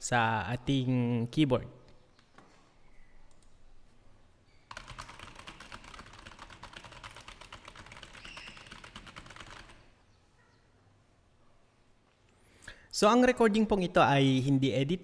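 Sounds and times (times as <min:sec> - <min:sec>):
fast typing on keyboard: 0:04.7 - 0:09.9.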